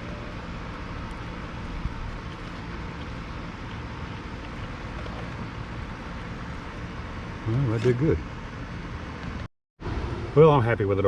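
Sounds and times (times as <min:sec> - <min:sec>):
rc car motor hum: 0:00.0 - 0:07.9.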